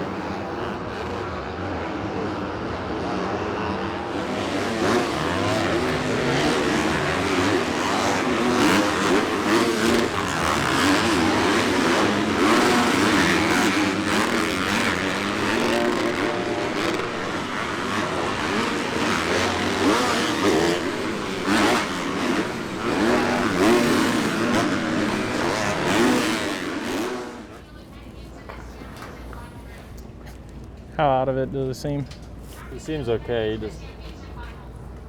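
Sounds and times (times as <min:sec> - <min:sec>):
dirt bike engines revving: 0:00.0 - 0:27.8.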